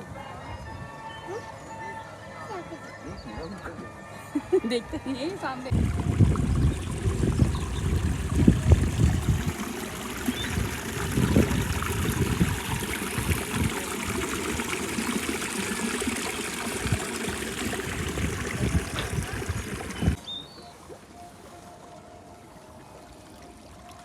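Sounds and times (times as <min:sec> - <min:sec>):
water running and trickling: 0:05.4 - 0:20.2
low rumbles: 0:05.7 - 0:20.2.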